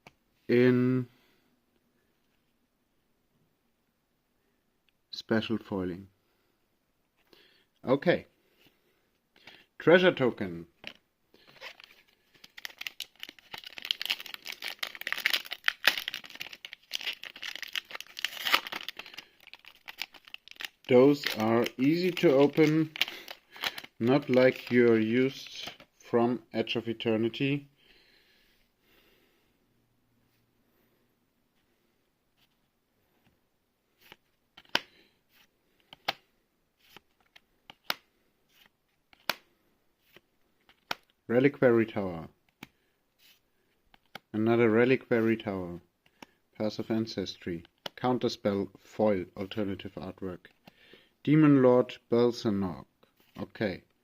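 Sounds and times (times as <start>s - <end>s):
foil wrapper tearing and crinkling: 11.6s - 24.8s
cards snapping and clicking: 34.6s - 34.9s, 37.3s - 38.1s, 39.2s - 39.4s.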